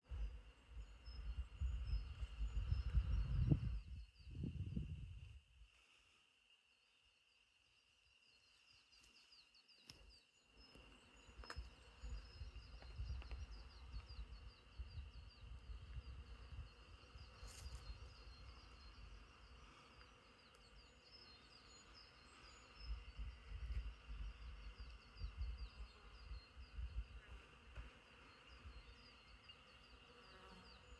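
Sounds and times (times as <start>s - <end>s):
wind rumble on microphone: 0.0s - 5.6s, 11.2s - 19.4s, 22.2s - 27.4s
high insect drone: 0.1s - 30.9s.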